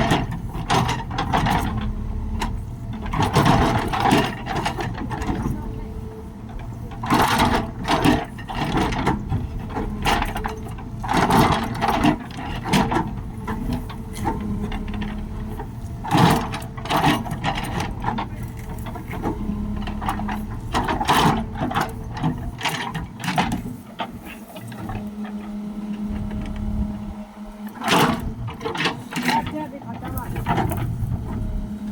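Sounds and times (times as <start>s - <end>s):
diesel engine rumbling under load: 0.0s - 31.9s
metallic clanks and knocks: 6.4s - 25.1s.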